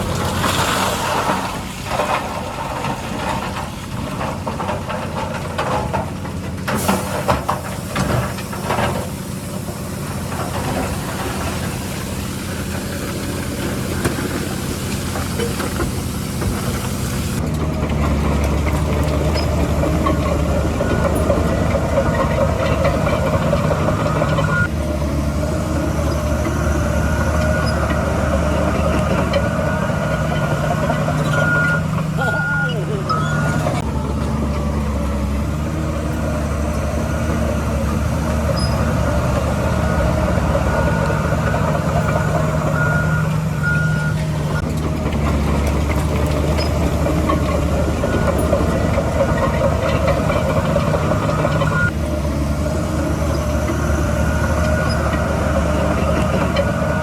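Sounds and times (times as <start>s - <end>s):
diesel machinery engine running: 0.0s - 57.0s
reversing alarm beeping: 19.3s - 24.7s, 25.7s - 33.8s, 36.9s - 44.7s, 46.4s - 52.0s, 52.8s - 57.0s.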